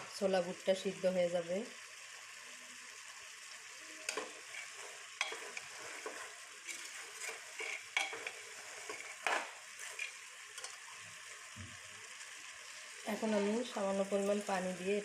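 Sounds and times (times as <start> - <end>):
chickpeas sizzling in oil: 0.0 - 15.0
spatula scraping a pan: 4.1 - 11.4.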